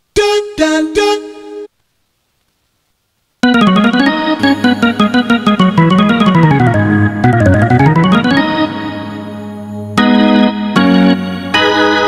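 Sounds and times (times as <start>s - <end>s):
keyboard falling run of notes: 3.4s - 9.4s.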